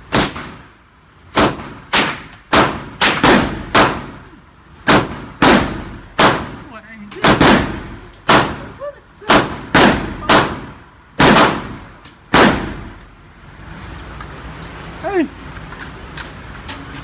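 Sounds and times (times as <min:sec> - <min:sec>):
gunshots with echoing tail: 0:00.1 - 0:00.7, 0:01.4 - 0:04.2, 0:04.9 - 0:13.0.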